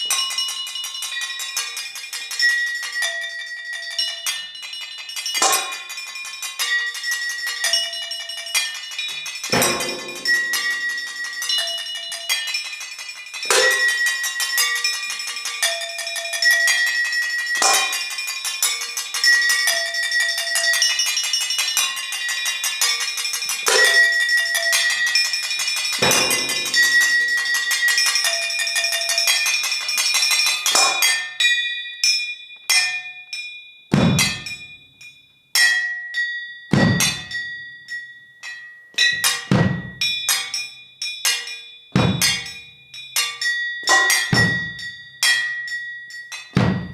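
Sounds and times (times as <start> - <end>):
struck metal percussion: 5.2 - 31.4, 33.9 - 34.8, 36.7 - 37.6, 39.0 - 40.7, 41.3 - 46.9
deep drum-like thud: 34.0 - 34.4.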